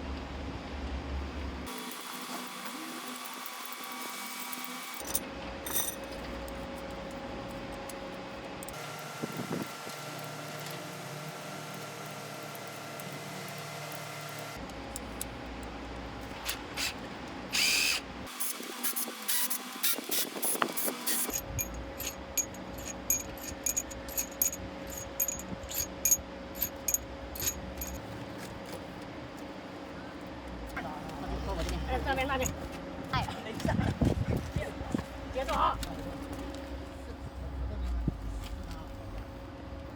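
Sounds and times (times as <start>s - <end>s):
metal tool clicks and clanks: 5.0s - 6.2s, 21.1s - 28.0s.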